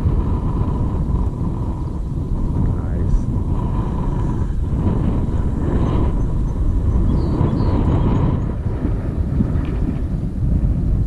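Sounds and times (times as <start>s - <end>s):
faint steady whine: 0.0s - 11.0s
wind buffeting microphone: 0.0s - 11.0s.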